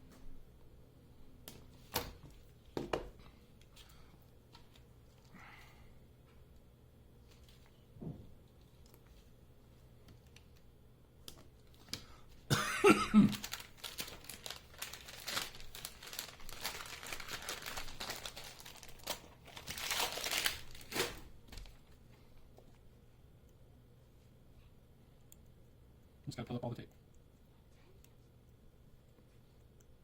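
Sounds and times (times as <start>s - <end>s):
tape and plastic backing crinkling: 13.2s - 22.8s.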